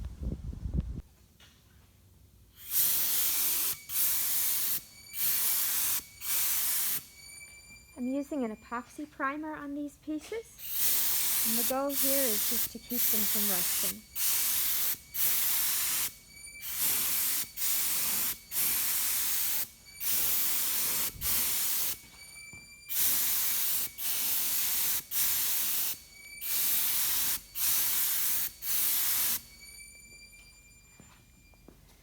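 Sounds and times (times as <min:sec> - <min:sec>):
spray gun hissing spurts: 0:02.6 - 0:07.3, 0:10.6 - 0:22.3, 0:22.9 - 0:29.8.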